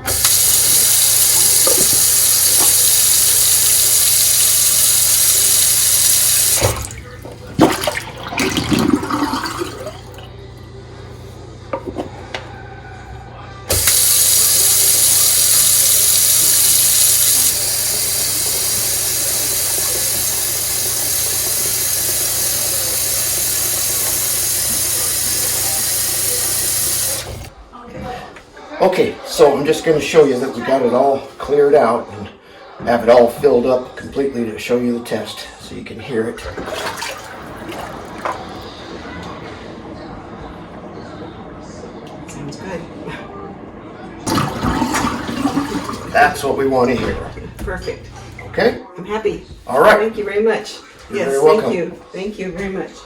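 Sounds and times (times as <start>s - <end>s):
faucet running into sink: 0.0s - 10.3s, 13.7s - 27.5s, 36.5s - 38.7s, 44.3s - 48.7s.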